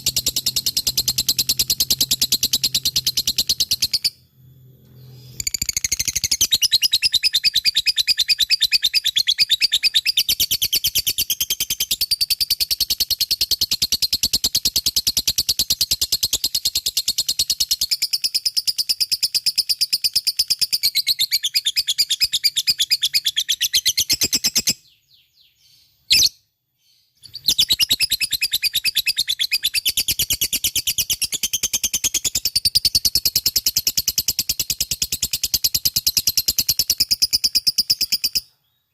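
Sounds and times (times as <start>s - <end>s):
bird chattering trill: 0.0s - 4.1s.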